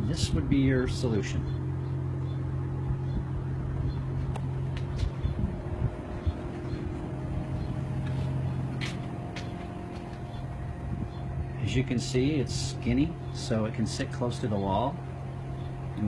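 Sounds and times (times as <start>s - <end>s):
heat pump unit humming: 0.0s - 16.0s.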